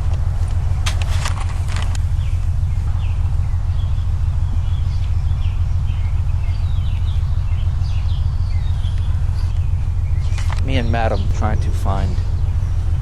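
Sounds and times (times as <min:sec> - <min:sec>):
birds chirping: 0:00.0 - 0:13.0
steady low rumble: 0:00.0 - 0:13.0.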